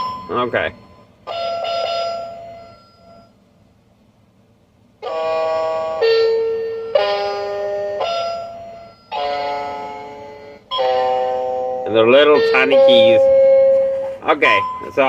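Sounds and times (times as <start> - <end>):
toy electronic keyboard notes: 0.0 - 3.3, 5.0 - 15.0.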